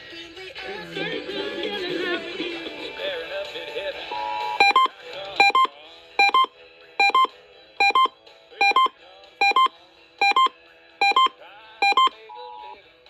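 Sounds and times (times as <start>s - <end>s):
electronic double beeps: 4.2s - 12.8s.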